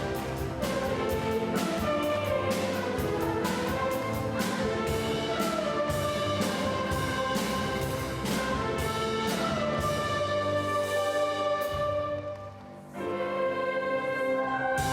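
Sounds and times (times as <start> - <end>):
orchestra sustained chords: 0.0 - 14.9.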